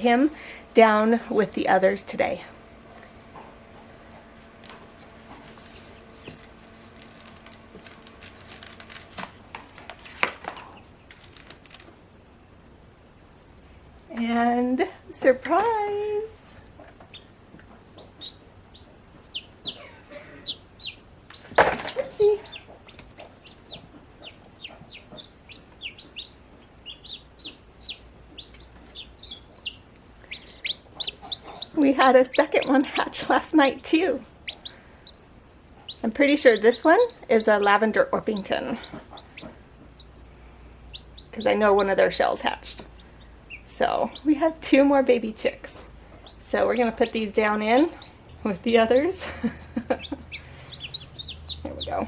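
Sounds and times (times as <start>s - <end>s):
faint steady hum: 0.0s - 52.0s
baby chicks peeping: 2.8s - 9.0s, 16.7s - 52.0s
hands rustling and clicking incubator: 2.9s - 12.0s, 20.8s - 35.2s, 35.8s - 40.3s, 49.2s - 52.0s.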